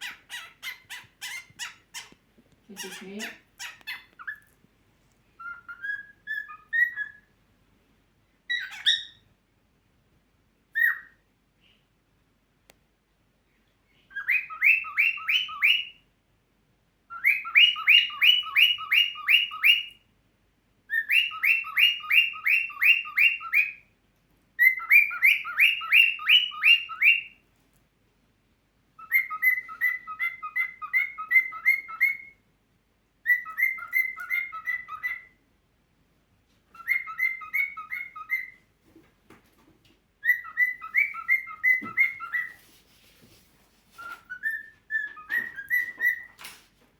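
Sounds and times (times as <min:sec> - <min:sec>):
cockatiel whistling chirps: 0:05.4 - 0:07.3, 0:08.5 - 0:09.3, 0:10.7 - 0:11.2, 0:14.0 - 0:16.0, 0:17.1 - 0:20.0, 0:20.9 - 0:23.8, 0:24.6 - 0:27.4, 0:29.0 - 0:32.4, 0:33.2 - 0:35.4, 0:36.7 - 0:38.7, 0:40.2 - 0:42.6, 0:44.0 - 0:46.4.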